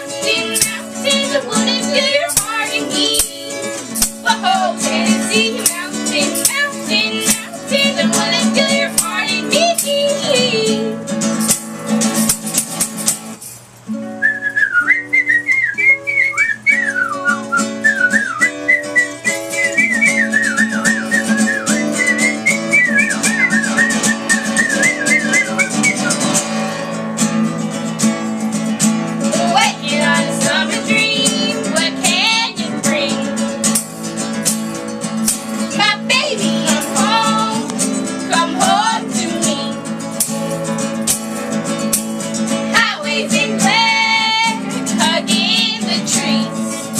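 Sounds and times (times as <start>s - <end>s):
person singing: 0.0s - 11.0s, 29.3s - 33.4s, 35.7s - 39.8s, 42.8s - 46.9s
acoustic guitar picking: 0.0s - 46.9s
whistled melody: 14.1s - 26.4s.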